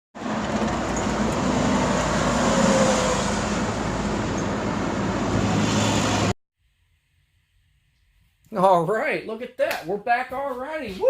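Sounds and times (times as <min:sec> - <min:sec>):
vehicle rushing rumble: 0:00.2 - 0:06.4.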